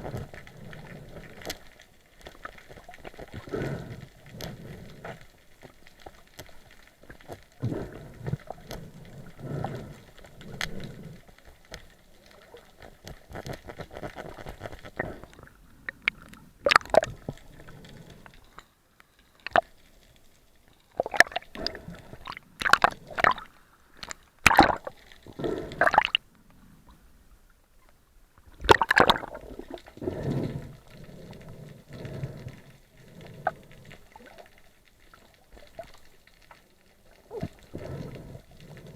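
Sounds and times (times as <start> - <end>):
water gurgling and sloshing: 0.0 - 38.9
loud bubbling bursts: 28.6 - 30.2.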